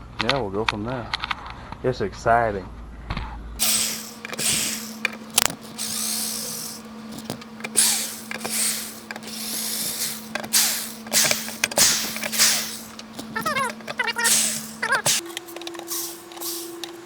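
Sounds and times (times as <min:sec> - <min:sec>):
hand tool scraping wood: 0:03.6 - 0:17.0
sharp clicks: 0:03.6 - 0:17.0
steady low hum: 0:03.6 - 0:17.0.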